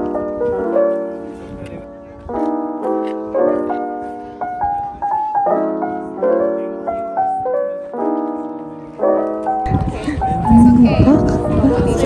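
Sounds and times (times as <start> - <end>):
soft slow piano chords: 0.0 - 12.0
short piano melody line: 9.6 - 11.9.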